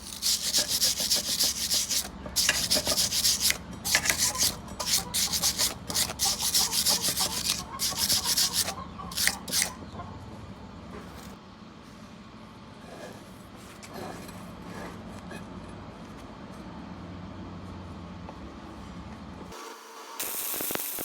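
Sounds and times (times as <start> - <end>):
wire brush scraping steel: 0.0 - 9.8.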